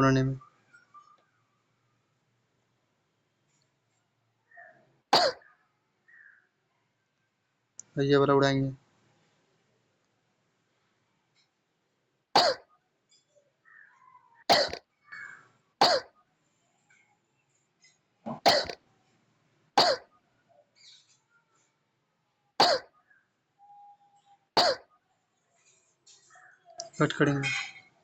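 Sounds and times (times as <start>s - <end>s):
person coughing: 5.2s - 5.4s, 12.4s - 12.6s, 14.5s - 14.8s, 15.8s - 16.1s, 18.3s - 18.8s, 19.8s - 20.0s, 22.6s - 22.9s, 24.6s - 24.9s.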